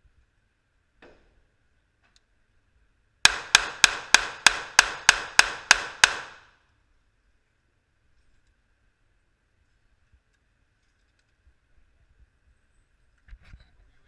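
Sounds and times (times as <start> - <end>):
rapid gunshots: 3.3 - 6.5.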